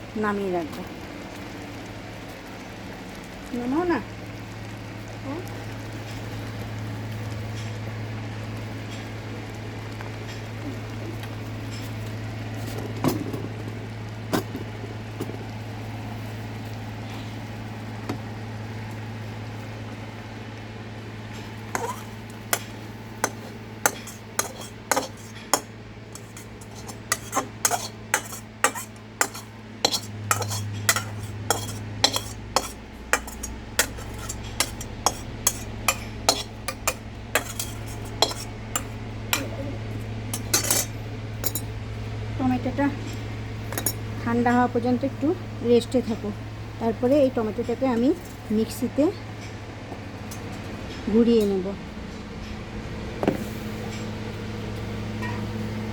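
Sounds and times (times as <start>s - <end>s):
metal spoon scraping a pan: 21.7s - 39.6s, 40.3s - 41.7s.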